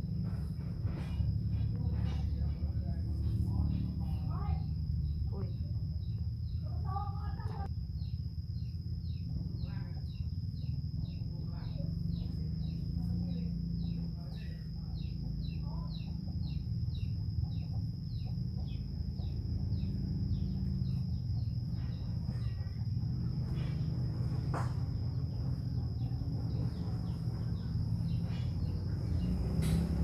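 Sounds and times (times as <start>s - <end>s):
high insect drone: 0.0s - 30.0s
low rumble: 0.0s - 30.0s
bird chirping: 0.1s - 30.0s
sharp click: 29.6s - 30.0s.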